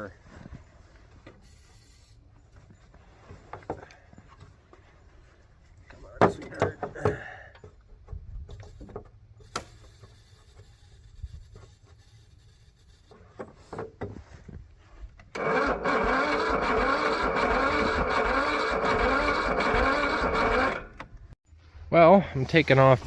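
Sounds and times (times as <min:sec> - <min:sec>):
engine cranking by starter: 0:15.2 - 0:21.4.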